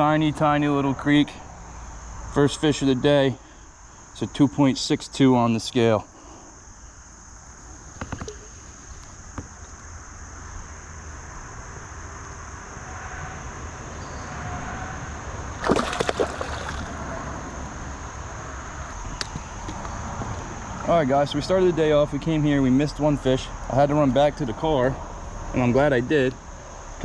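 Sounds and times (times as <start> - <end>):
high insect trill: 0.0 - 27.0
water sloshing and gurgling: 7.8 - 8.9, 15.6 - 17.2
water splash: 15.6 - 17.1.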